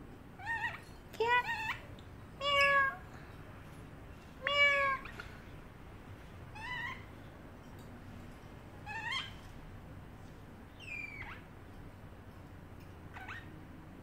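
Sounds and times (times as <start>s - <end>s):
parrotlet squeaky calls: 0.4s - 2.9s, 6.5s - 7.2s, 8.8s - 9.5s, 10.7s - 11.6s, 13.1s - 13.6s.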